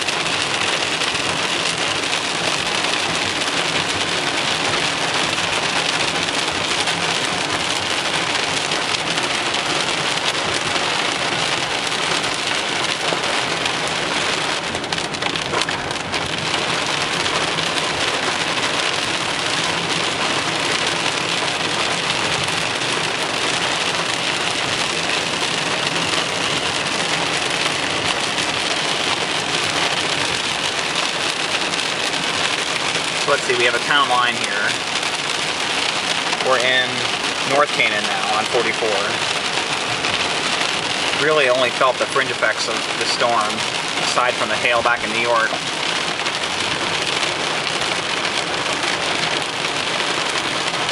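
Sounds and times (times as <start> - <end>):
rain beating on a car: 0.0 - 50.9
road noise inside car: 0.0 - 50.9.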